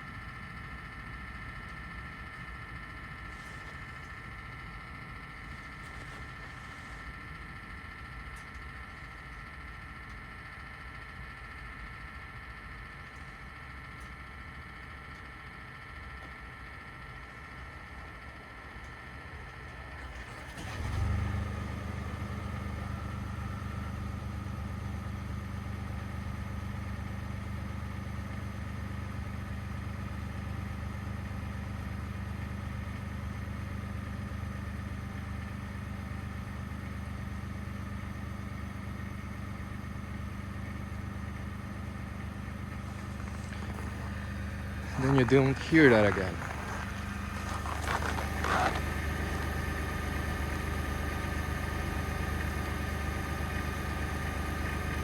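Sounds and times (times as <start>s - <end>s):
engine starting and idling: 19.4s - 24.2s, 41.0s - 55.0s.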